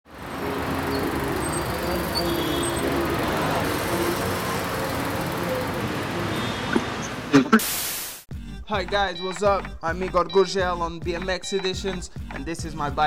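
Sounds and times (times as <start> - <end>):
road traffic noise: 0.0 - 8.2.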